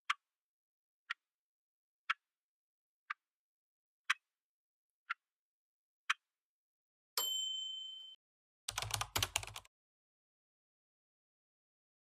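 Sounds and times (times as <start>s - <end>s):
clock ticking: 0.1s - 0.3s, 2.1s - 2.3s, 4.1s - 4.3s
chime ringing: 7.2s - 8.2s.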